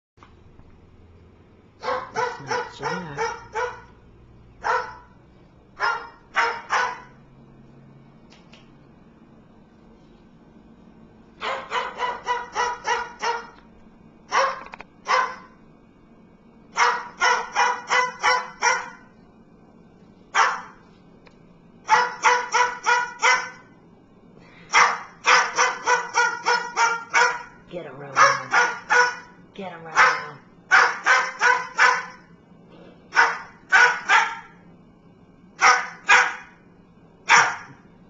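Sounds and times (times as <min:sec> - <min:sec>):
bird mimicking dog barks: 0:01.8 - 0:03.9.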